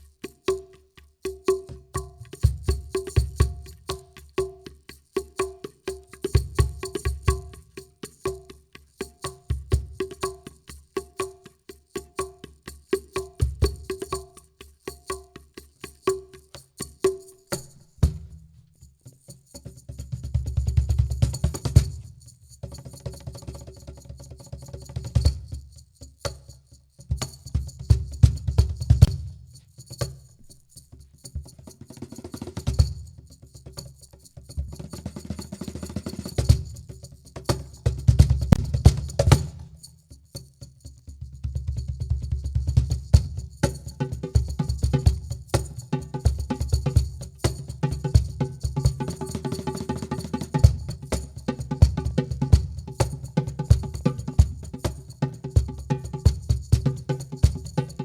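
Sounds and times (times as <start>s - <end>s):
shaker rattling: 0.0s - 58.0s.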